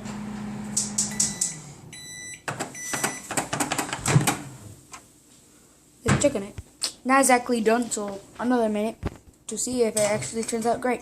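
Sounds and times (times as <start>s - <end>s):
microwave beep: 0.0s - 3.3s
microwave oven humming: 0.0s - 5.0s.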